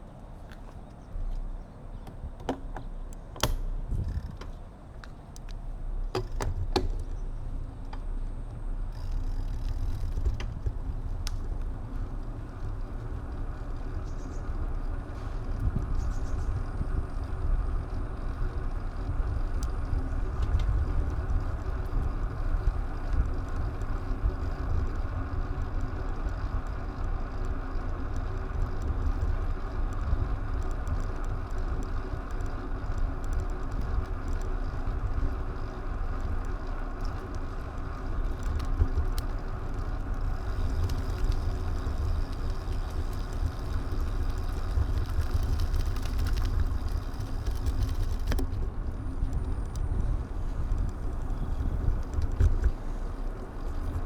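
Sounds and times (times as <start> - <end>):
wind and road noise: 0.0 - 54.0
sharp clicks: 0.4 - 11.7.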